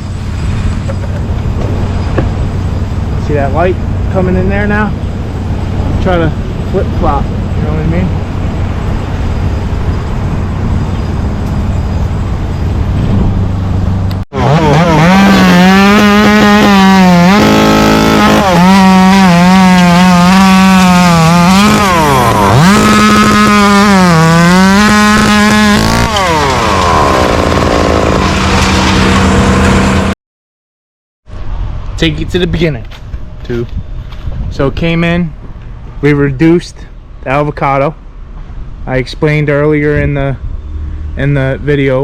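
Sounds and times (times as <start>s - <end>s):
chainsaw running at high revs: 14.4s - 30.1s.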